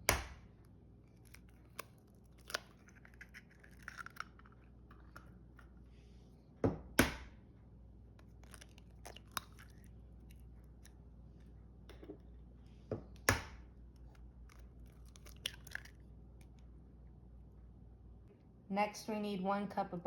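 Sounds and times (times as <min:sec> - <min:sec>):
eggshell crunching: 0:01.0 - 0:05.8, 0:08.2 - 0:12.3, 0:13.9 - 0:16.6
eggs cracking against bowl: 0:01.1 - 0:05.8, 0:08.2 - 0:11.0, 0:13.2 - 0:16.6.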